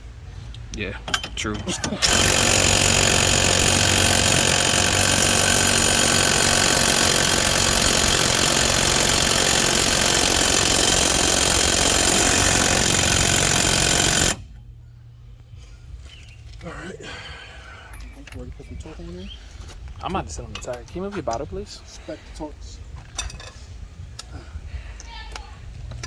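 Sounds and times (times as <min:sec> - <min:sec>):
power tool running: 0:02.0 - 0:14.5.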